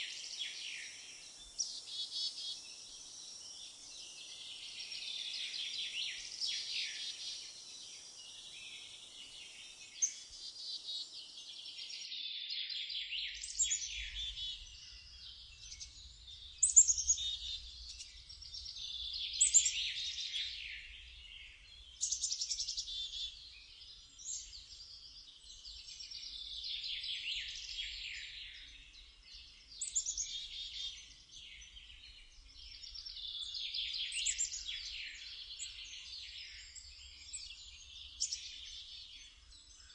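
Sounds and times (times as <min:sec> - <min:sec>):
songbirds warbling: 0:00.0 - 0:12.1, 0:12.7 - 0:39.9.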